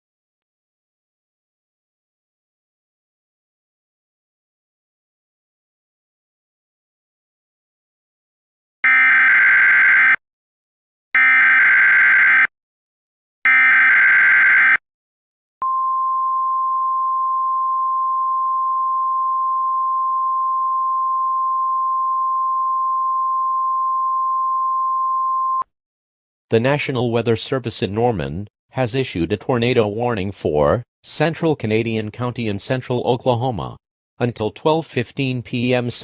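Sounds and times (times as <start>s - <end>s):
steady warning alarm tone: 8.8s - 10.2s, 11.2s - 12.5s, 13.5s - 14.8s.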